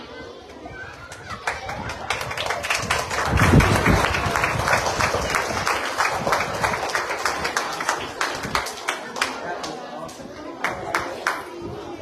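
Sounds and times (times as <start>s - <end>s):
crowd applauding: 1.2s - 9.8s.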